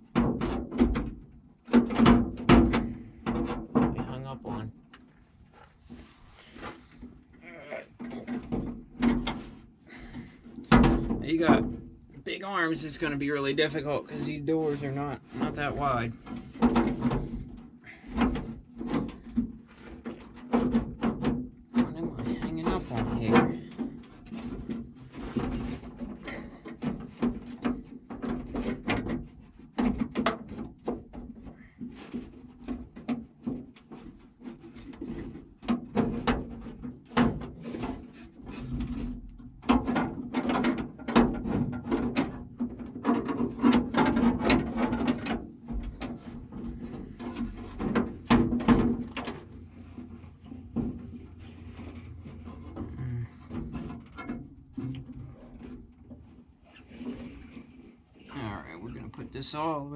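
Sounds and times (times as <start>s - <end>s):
metal parts clunking and scraping: 13.0s - 58.3s.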